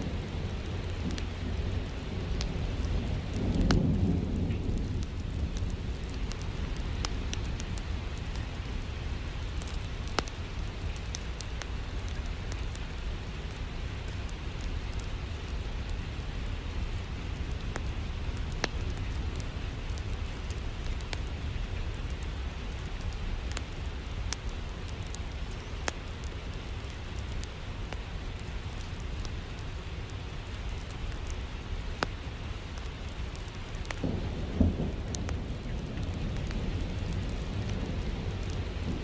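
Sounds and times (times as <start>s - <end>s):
steady rain: 0.0s - 39.0s
sharp crackles: 0.5s - 39.0s
thunder rolling: 34.0s - 39.0s.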